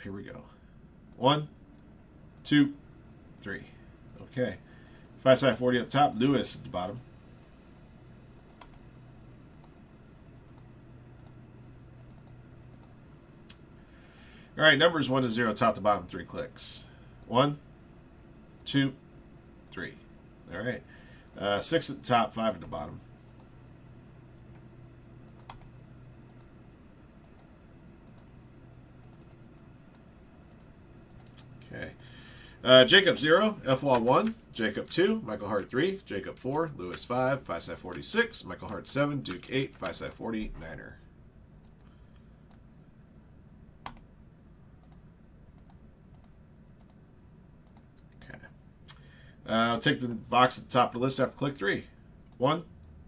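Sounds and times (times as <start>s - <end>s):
low steady hum: 0.0s - 53.0s
computer mouse clicks: 4.8s - 5.2s, 8.4s - 8.8s, 9.5s - 9.8s, 10.5s - 11.4s, 12.0s - 14.3s, 21.1s - 21.4s, 22.6s - 23.5s, 25.2s - 26.5s, 27.2s - 28.3s, 29.0s - 32.1s, 41.6s - 42.7s, 43.8s - 44.1s, 44.8s - 47.0s, 47.6s - 49.1s.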